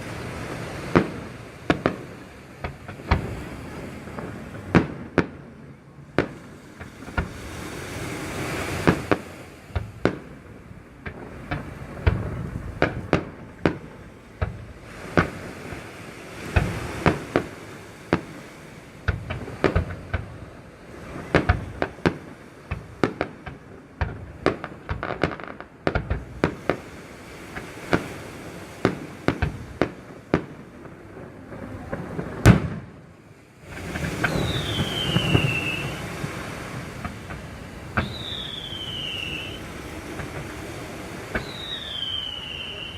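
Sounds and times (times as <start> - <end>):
fireworks bangs and crackles: 0.0 - 42.9
continuous rumble: 29.0 - 35.5
firework whistle falling in pitch: 34.1 - 36.2, 38.0 - 39.7, 41.3 - 42.9.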